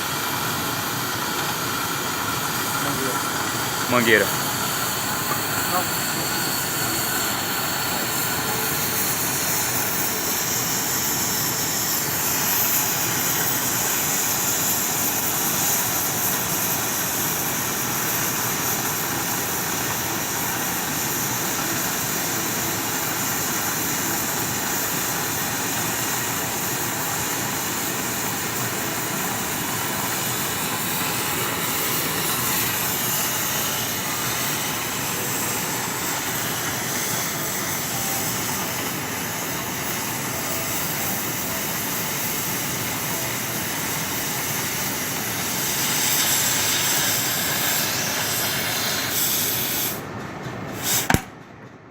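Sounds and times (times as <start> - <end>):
pipe cutting machine hissing roar: 0.0 - 51.3.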